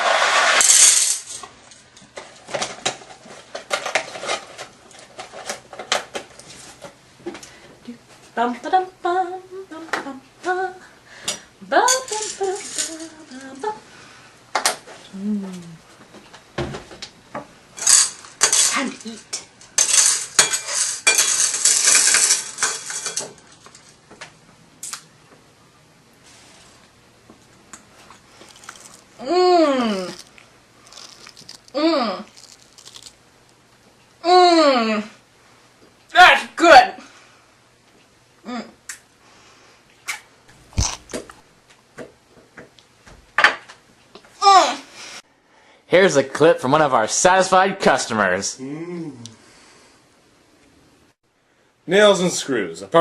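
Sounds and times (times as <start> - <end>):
nails and screws rattling in a bowl: 0.4 - 5.7, 11.9 - 13.2, 17.8 - 24.0, 28.4 - 29.1, 30.0 - 33.2
nails clinking against a dish: 19.8 - 23.4.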